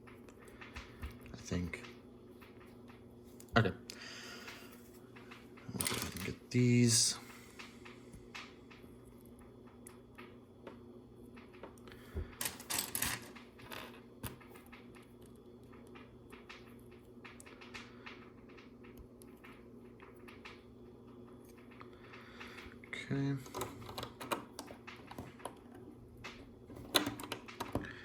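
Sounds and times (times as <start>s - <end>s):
rattle of plastic pieces: 5.2s - 6.5s, 11.4s - 15.1s, 23.5s - 28.0s.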